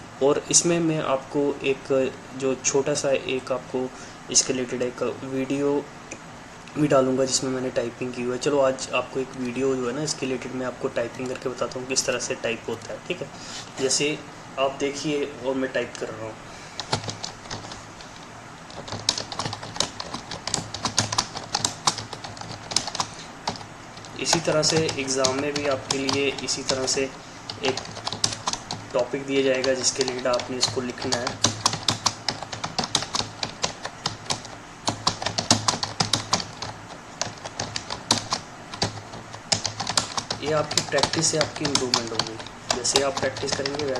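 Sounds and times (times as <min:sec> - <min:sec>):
computer keyboard typing: 0:11.1 - 0:13.0, 0:16.8 - 0:43.9.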